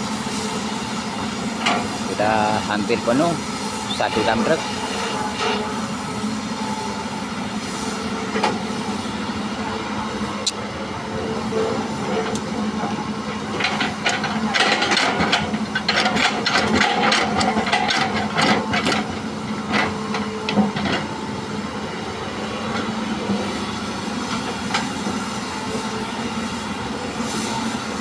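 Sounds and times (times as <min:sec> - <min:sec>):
diesel engine running: 0:00.0 - 0:28.0
soil knocking and rattling: 0:13.4 - 0:21.1.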